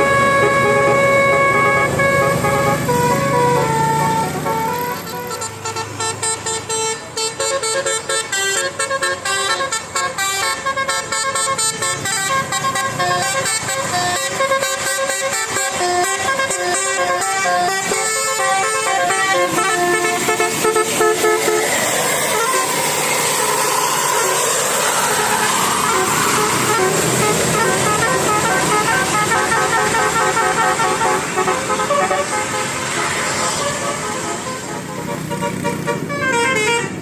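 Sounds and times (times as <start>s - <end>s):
tuned bus horns playing tunes: 0.0s - 37.0s
fast repeated short horn notes: 4.4s - 22.9s
rushing noise: 18.7s - 36.0s.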